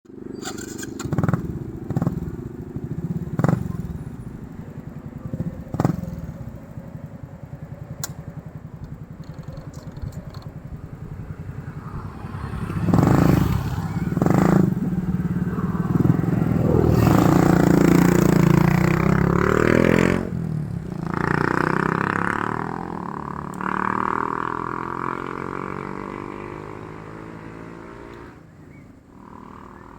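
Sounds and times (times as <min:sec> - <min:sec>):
vehicle engines on road: 0:00.0 - 0:29.9
vehicle passing by: 0:10.6 - 0:28.4.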